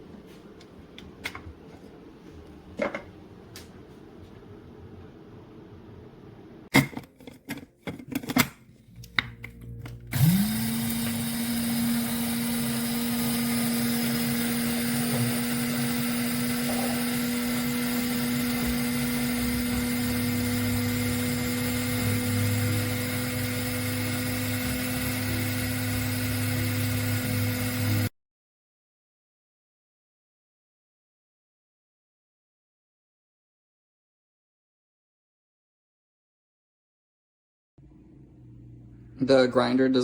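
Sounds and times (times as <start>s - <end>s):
coffee grinder motor running: 10.1s - 28.1s.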